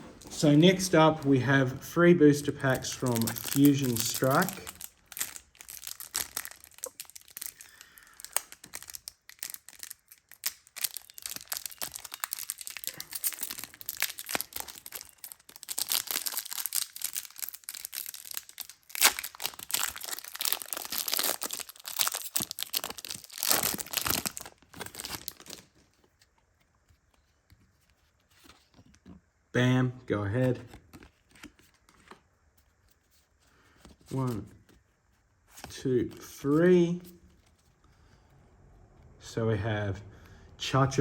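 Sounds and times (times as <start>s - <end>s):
foil wrappers crinkling and tearing: 2.6s - 26.2s.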